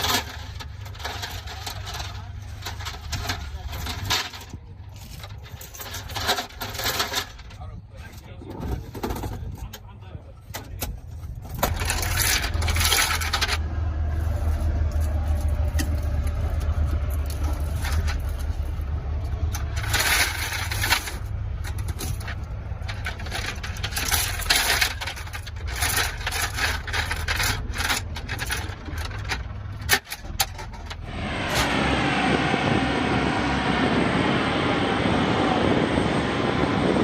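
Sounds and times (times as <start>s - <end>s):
dense metallic clinking: 11.5s - 13.6s, 15.0s - 31.1s.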